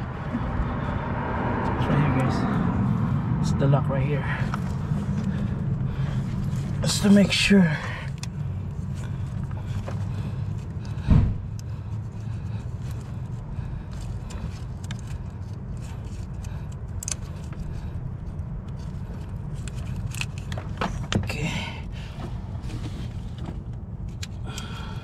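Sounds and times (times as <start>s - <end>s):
steady low rumble: 0.0s - 25.0s
heavy thump: 11.0s - 11.5s.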